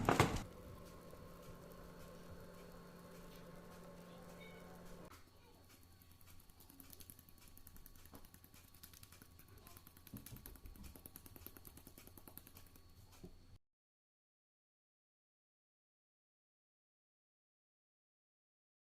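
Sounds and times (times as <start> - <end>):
faint clicks and crackles: 0.0 - 13.3
low steady hum: 0.0 - 13.6.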